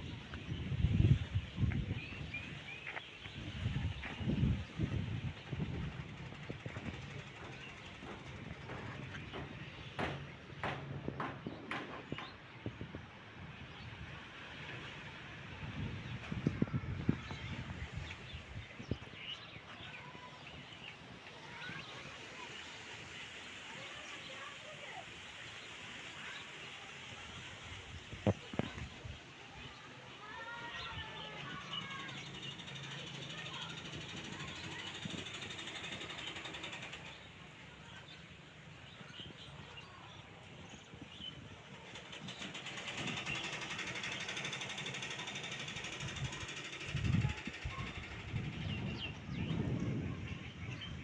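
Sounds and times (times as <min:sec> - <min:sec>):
outdoor hiss: 0:19.2 - 0:39.0.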